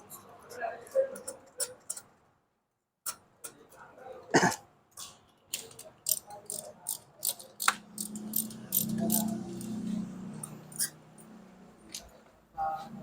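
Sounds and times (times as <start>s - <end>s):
hand tools clicking and clinking: 5.0s - 9.8s.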